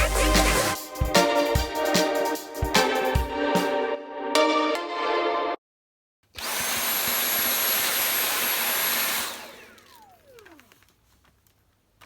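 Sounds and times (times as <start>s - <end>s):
vacuum motor winding down: 6.4s - 10.9s
cordless vacuum running: 6.4s - 11.0s.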